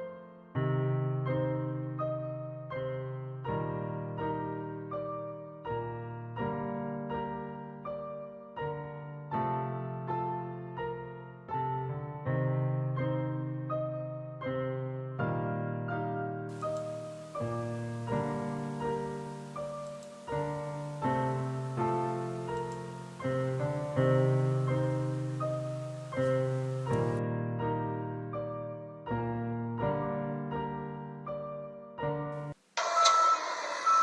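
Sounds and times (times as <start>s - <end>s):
slow gentle piano music: 0.0s - 34.0s
faint hiss: 16.5s - 27.2s.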